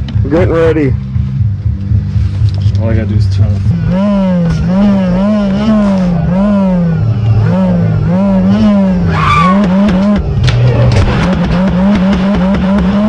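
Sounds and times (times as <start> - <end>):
electronic wailing siren tone: 3.9 - 10.1.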